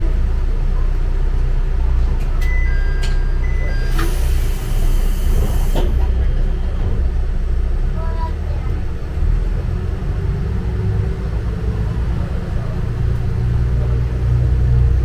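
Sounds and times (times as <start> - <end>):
diesel railcar rumbling: 0.0 - 15.0
electronic two-pitch beeps: 2.4 - 4.4
compressed air hiss: 4.0 - 6.0.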